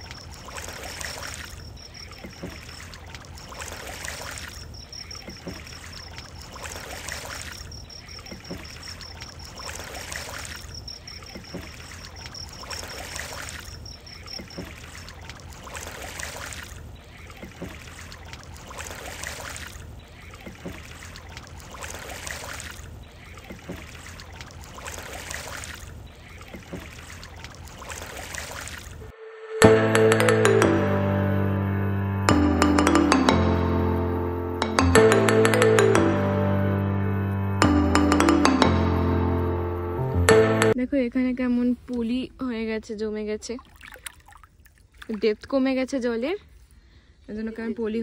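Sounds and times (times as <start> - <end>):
oars swishing through water: 0.0 - 29.1, 43.5 - 47.1
thin high whine: 29.1 - 29.8.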